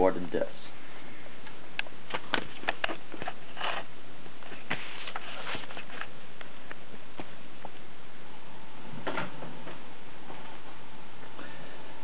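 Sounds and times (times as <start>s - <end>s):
rustles and scrapes: 2.1s - 6.2s.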